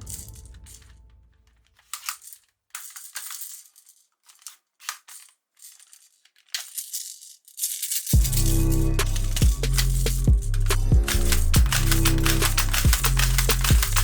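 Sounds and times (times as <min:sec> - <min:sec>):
plastic toy gun clicking: 0:01.6 - 0:03.5, 0:09.0 - 0:14.0
music with heavy bass beat: 0:08.2 - 0:14.0.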